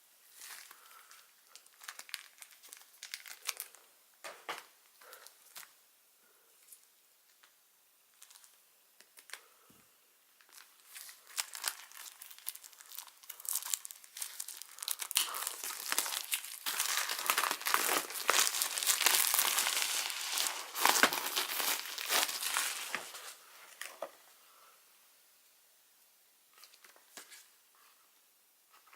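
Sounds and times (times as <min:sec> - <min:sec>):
packaging crinkling and rustling: 0:00.3 - 0:05.7, 0:07.4 - 0:09.5, 0:10.4 - 0:24.2.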